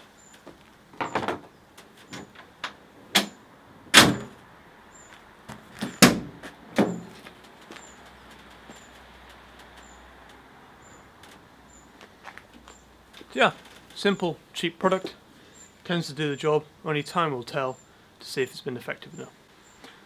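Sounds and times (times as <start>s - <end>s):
metal clunks: 5.5s - 7.2s.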